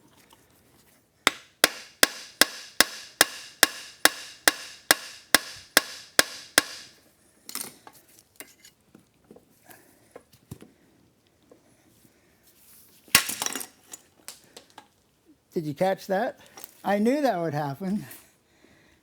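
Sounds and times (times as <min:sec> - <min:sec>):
hammer striking steel: 0:01.3 - 0:07.0.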